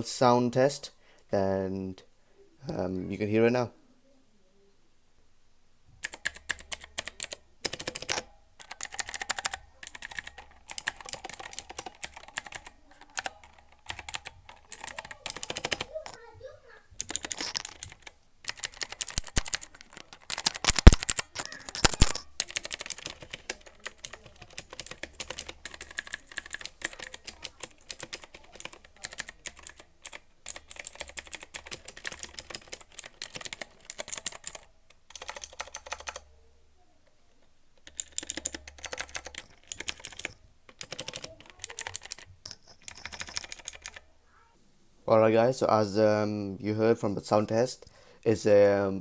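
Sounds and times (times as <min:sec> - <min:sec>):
mechanical keyboard clicking: 0:06.0 - 0:15.9, 0:17.0 - 0:36.3, 0:37.8 - 0:44.0.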